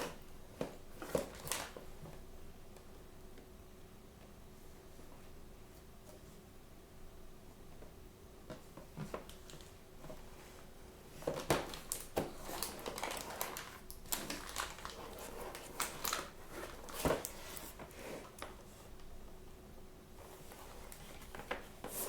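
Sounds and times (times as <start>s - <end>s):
plastic packaging crinkling: 1.0s - 1.9s, 11.2s - 18.5s.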